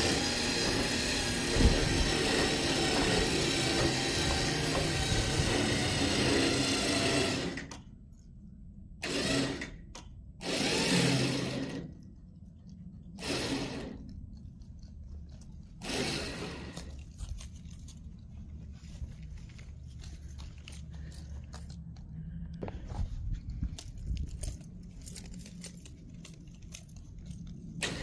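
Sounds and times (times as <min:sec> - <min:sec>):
winch pulling: 0:00.0 - 0:07.8, 0:13.2 - 0:14.2, 0:15.4 - 0:18.2, 0:23.7 - 0:28.0.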